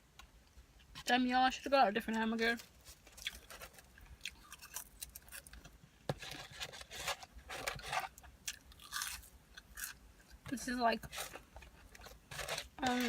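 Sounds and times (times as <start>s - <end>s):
person chewing: 3.1s - 5.7s, 8.0s - 10.4s.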